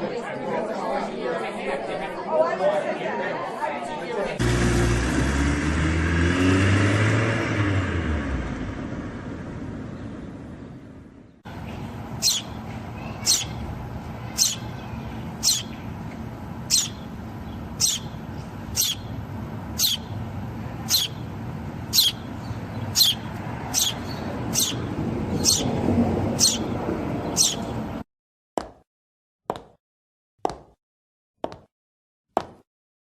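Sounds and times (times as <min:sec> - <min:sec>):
vehicle passing: 0:04.4 - 0:28.0
bird whistling call: 0:12.2 - 0:12.6, 0:13.2 - 0:13.6, 0:14.4 - 0:14.7, 0:15.4 - 0:15.8, 0:16.7 - 0:17.0, 0:17.8 - 0:18.2, 0:18.8 - 0:19.1, 0:19.8 - 0:20.1, 0:20.9 - 0:21.2, 0:22.0 - 0:22.2, 0:23.0 - 0:23.2, 0:23.8 - 0:24.0, 0:24.6 - 0:24.8, 0:26.4 - 0:26.6, 0:27.4 - 0:27.6.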